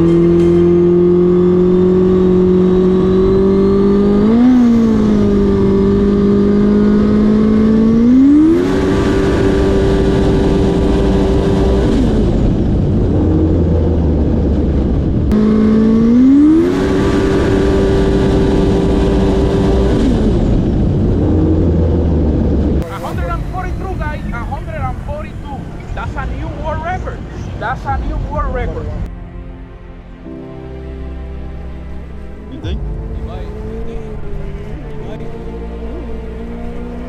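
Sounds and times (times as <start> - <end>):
jet ski engine idling and revving: 0.0 - 24.7.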